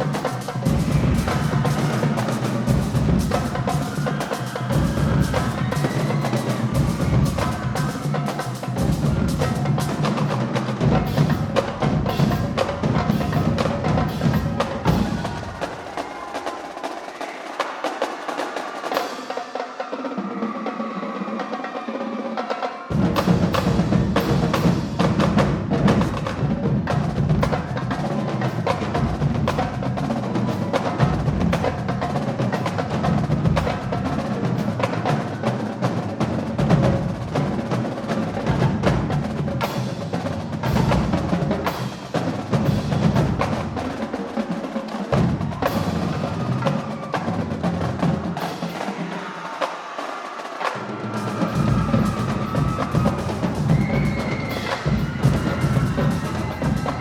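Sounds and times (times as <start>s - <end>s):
marching drumline playing: 0.0s - 57.0s.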